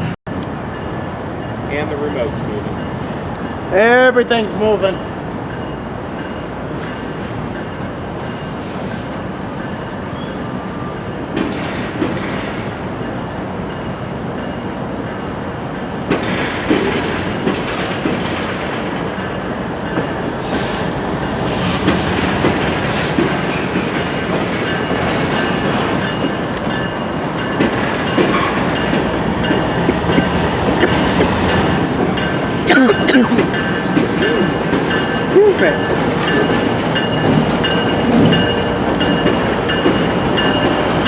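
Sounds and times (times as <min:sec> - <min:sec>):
freight cars rumbling: 0:16.1 - 0:41.0
wheels clanking over rail joints: 0:33.4 - 0:41.0.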